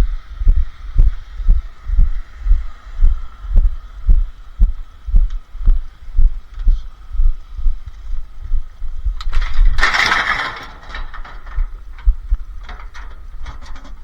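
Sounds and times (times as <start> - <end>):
low rumble: 0.0 - 13.7
scrap metal clattering onto pile: 9.3 - 11.8, 12.6 - 14.0.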